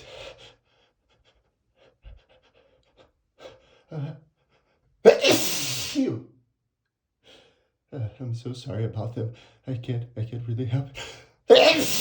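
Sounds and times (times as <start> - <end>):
man sneezing: 5.0 - 6.2, 11.5 - 12.0.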